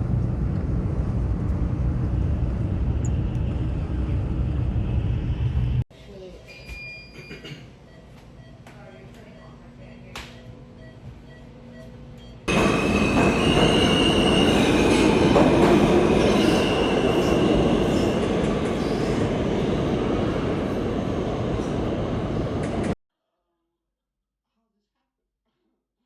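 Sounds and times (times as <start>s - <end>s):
subway train rumble: 0.0s - 6.5s, 7.2s - 23.0s.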